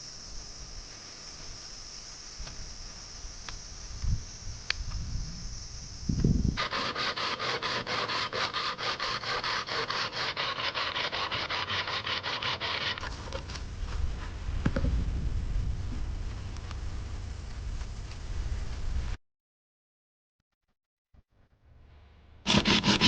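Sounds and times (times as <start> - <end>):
hand saw cutting wood: 6.6 - 13.2, 22.4 - 23.0.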